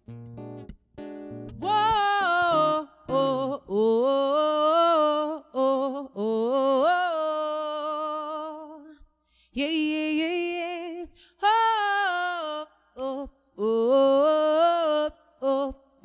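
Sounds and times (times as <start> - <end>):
acoustic guitar chords: 0.0 - 3.8
woman singing wordless held notes: 1.6 - 9.0.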